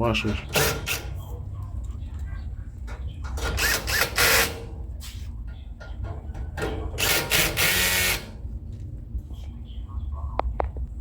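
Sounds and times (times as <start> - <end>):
power drill driving screws into metal: 3.5 - 4.6, 7.0 - 8.3.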